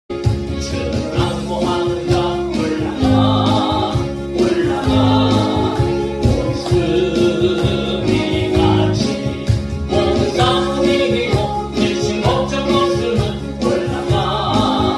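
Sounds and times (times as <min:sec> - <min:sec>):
choir singing gospel song: 0:00.7 - 0:14.9.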